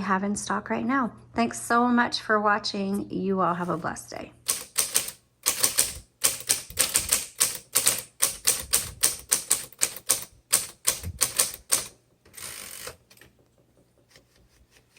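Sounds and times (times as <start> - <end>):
typewriter keystroke clacks: 4.5 - 13.0.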